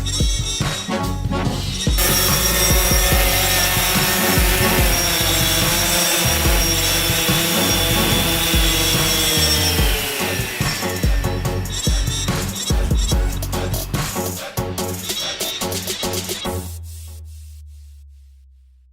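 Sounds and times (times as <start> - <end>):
drone propellers whining: 2.0 - 14.2.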